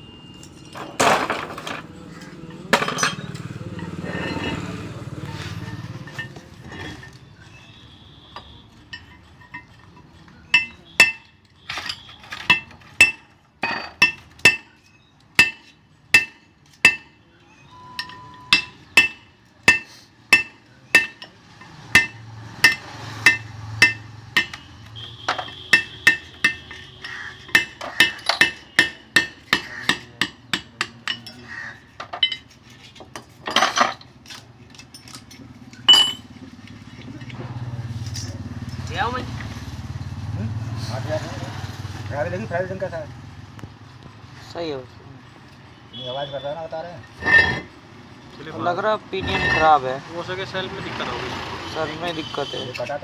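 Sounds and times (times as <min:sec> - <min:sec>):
hammer striking metal: 0:10.5 - 0:14.8, 0:15.4 - 0:17.2, 0:17.9 - 0:31.4, 0:35.9 - 0:36.3.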